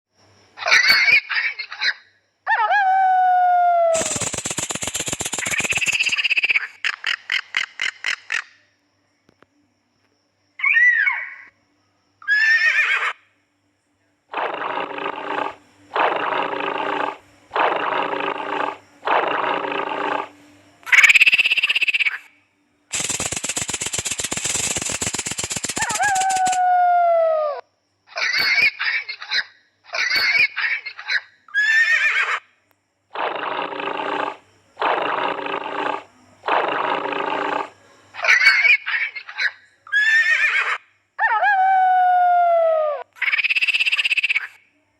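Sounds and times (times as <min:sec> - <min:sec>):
animal calls: 0:00.6 - 0:08.4, 0:10.6 - 0:11.5, 0:12.2 - 0:13.2, 0:25.7 - 0:27.6, 0:33.2 - 0:44.6.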